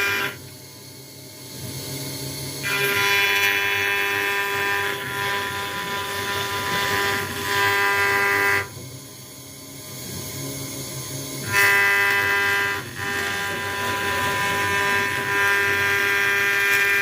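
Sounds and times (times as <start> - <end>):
router spindle whine cutting acrylic: 0.0 - 0.5, 2.6 - 8.8, 11.4 - 17.0.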